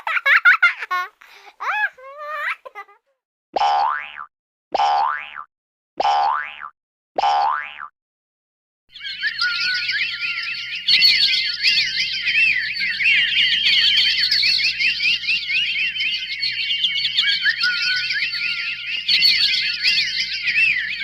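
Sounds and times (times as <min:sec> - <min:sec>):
dense chirps and trills: 0:08.9 - 0:21.0.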